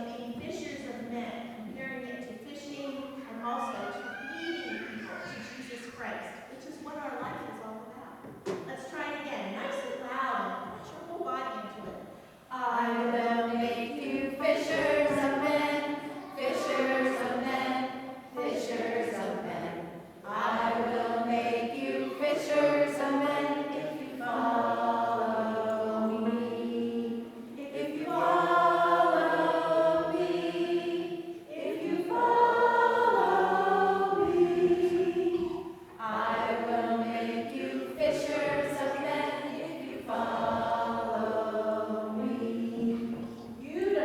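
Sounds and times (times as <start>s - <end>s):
choir singing sacred song: 12.5s - 44.0s.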